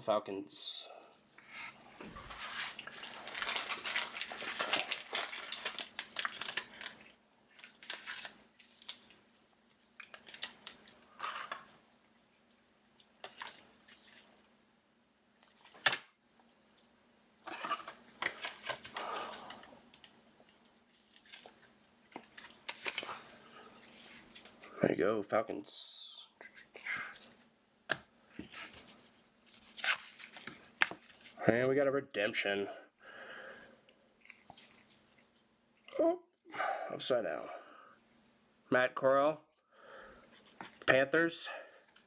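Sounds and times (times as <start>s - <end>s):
cards and packaging rustling: 1.4s - 14.4s, 17.4s - 24.8s, 28.3s - 31.4s, 34.2s - 35.9s.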